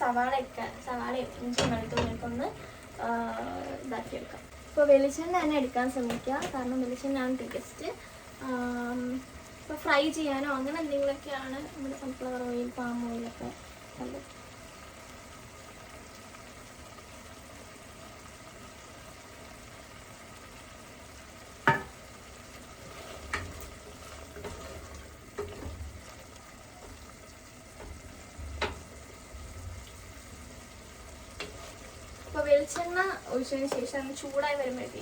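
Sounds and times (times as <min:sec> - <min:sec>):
pan sizzling: 0:00.0 - 0:35.0
utensils clinking on cookware: 0:01.5 - 0:02.4.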